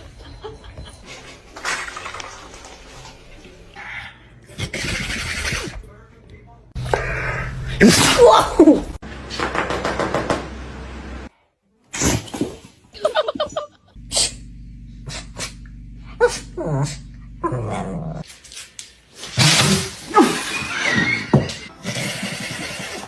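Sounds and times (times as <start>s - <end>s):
dogs yipping and whining: 20.2s - 21.7s.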